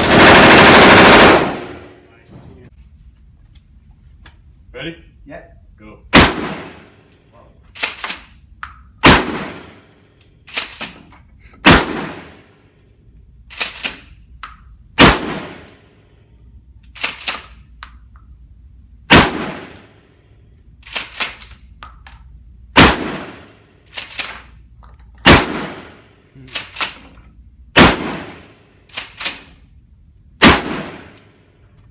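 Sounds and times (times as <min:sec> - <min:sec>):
pistol shots echoing: 0:06.2 - 0:06.9, 0:09.0 - 0:09.8, 0:11.6 - 0:12.4, 0:15.0 - 0:15.7, 0:19.1 - 0:19.8, 0:22.8 - 0:23.6, 0:25.2 - 0:26.1, 0:27.8 - 0:28.6, 0:30.4 - 0:31.2.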